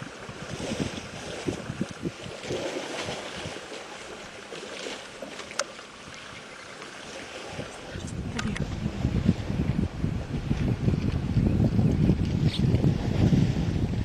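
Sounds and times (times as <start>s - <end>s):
wind buffeting microphone: 0.0s - 3.7s, 7.3s - 14.0s
water sloshing and splashing: 0.0s - 14.0s.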